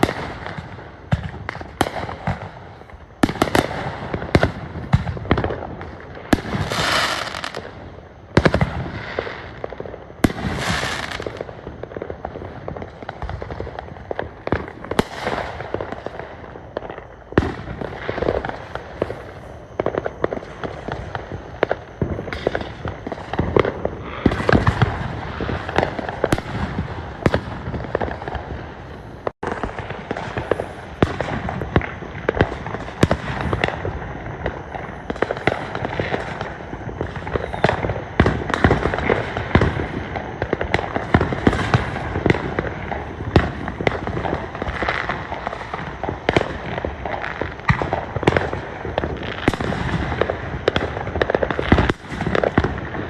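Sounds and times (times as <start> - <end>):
fireworks bangs: 0.0 - 53.0
fireworks crackling: 0.0 - 53.0.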